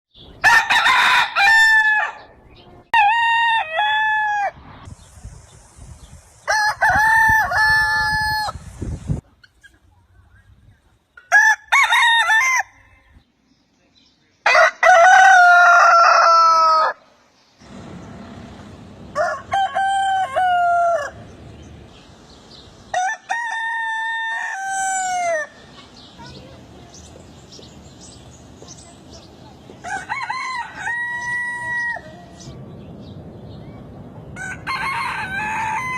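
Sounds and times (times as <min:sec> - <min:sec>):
rooster crowing: 0:00.4 - 0:02.3, 0:02.9 - 0:04.6, 0:11.3 - 0:13.0, 0:14.4 - 0:17.0, 0:19.0 - 0:21.3, 0:22.9 - 0:25.6, 0:29.8 - 0:32.4, 0:34.4 - 0:35.9.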